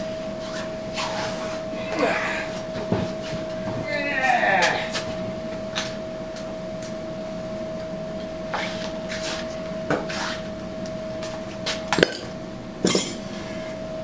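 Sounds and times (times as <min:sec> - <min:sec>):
steady background hum: 0:00.0 - 0:14.0
metal tools clinking: 0:12.9 - 0:13.2.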